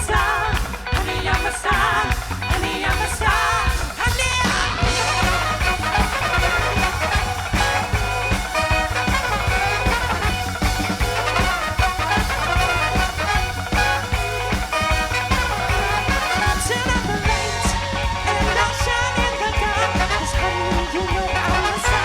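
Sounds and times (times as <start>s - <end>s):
horns: 0.0s - 22.0s
live soul band playing: 0.0s - 22.0s.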